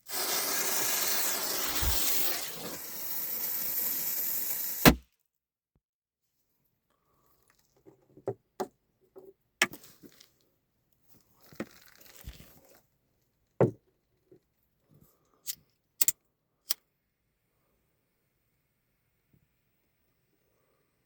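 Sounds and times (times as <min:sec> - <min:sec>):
firecrackers popping: 0:00.0 - 0:05.0
hiss: 0:00.0 - 0:05.0.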